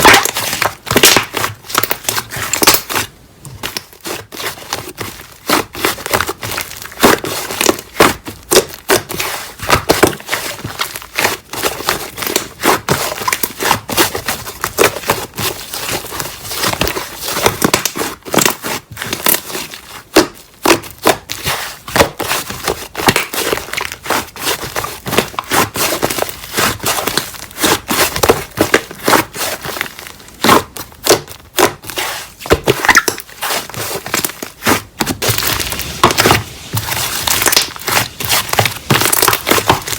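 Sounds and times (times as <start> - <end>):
slime crackling and popping: 0.0 - 39.9.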